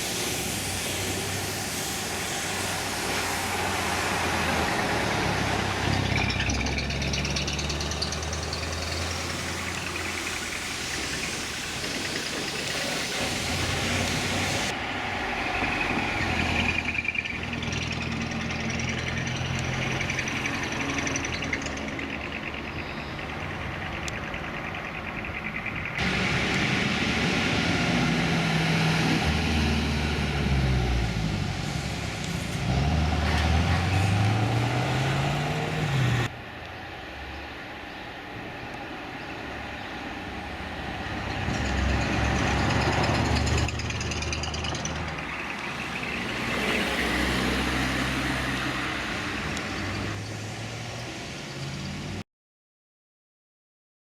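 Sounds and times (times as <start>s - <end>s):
car engine revving: 32.6s - 36.3s.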